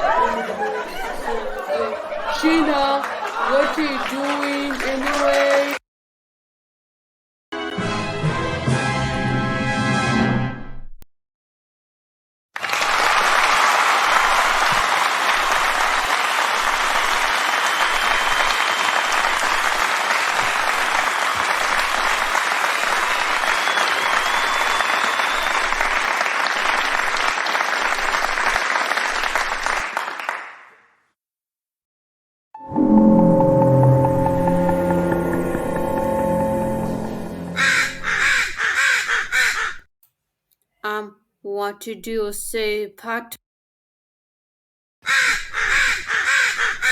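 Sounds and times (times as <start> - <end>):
crowd applauding: 0.0 - 5.8, 12.6 - 30.9
faint whistle: 23.6 - 25.7.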